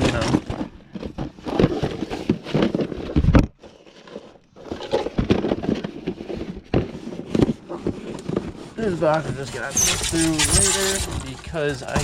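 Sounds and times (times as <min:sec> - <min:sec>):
objects clattering in boxes: 0:00.0 - 0:12.0.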